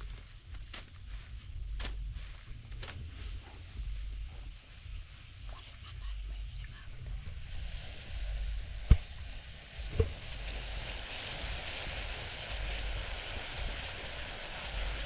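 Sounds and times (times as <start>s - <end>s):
food sizzling in hot oil: 7.4s - 15.0s.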